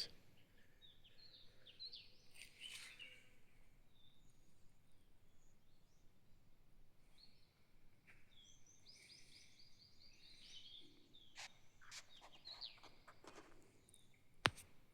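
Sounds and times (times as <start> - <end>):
bird chirping: 8.3 - 14.1.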